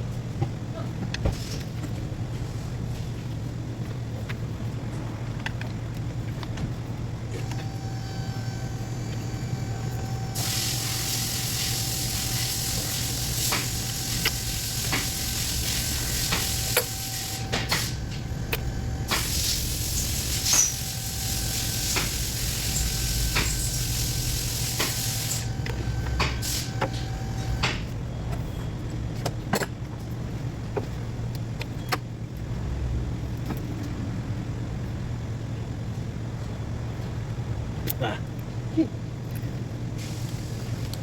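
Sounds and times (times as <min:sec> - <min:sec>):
hiss of spray or air jet: 0:10.4 - 0:18.0, 0:19.1 - 0:25.5, 0:26.3 - 0:26.8, 0:40.0 - 0:40.8.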